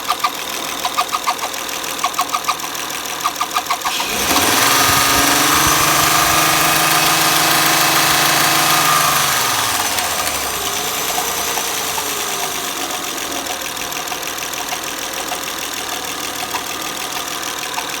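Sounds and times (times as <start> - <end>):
car engine idling: 3.9 - 18.0.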